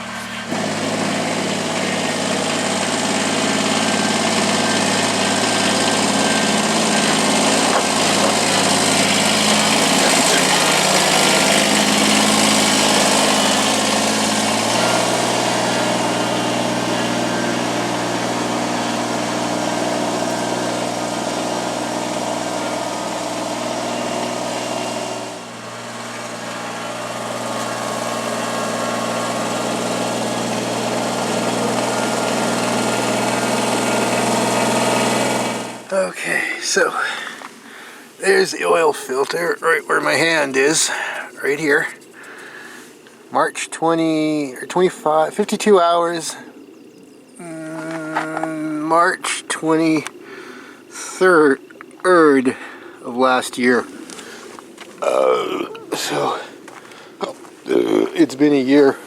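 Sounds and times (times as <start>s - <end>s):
tractor diesel engine running: 0.0s - 59.0s.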